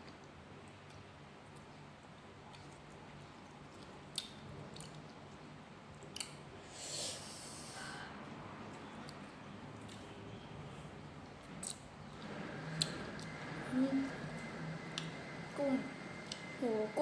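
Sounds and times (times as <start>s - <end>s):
person chewing: 0.0s - 6.4s, 11.4s - 11.9s, 12.7s - 13.3s.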